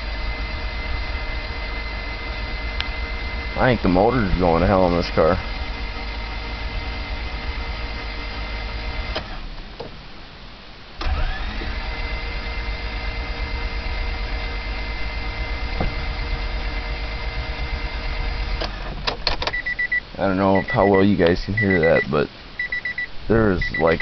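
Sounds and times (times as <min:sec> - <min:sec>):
starter whine: 0:00.0 - 0:10.0, 0:11.0 - 0:24.0
engine cranking on starter: 0:02.4 - 0:09.5, 0:11.0 - 0:19.8.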